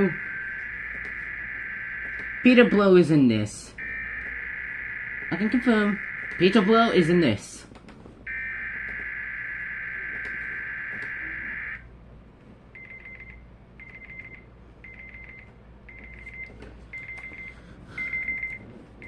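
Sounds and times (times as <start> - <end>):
alarm beeping in rapid groups: 0.0 - 7.4, 8.3 - 11.8.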